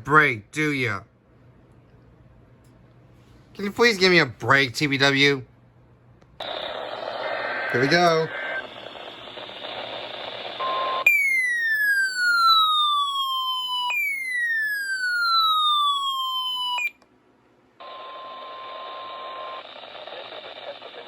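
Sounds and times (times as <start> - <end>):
radio hiss: 6.4 - 11.0, 18.4 - 21.0
falling electronic siren sweeps: 8.6 - 17.0.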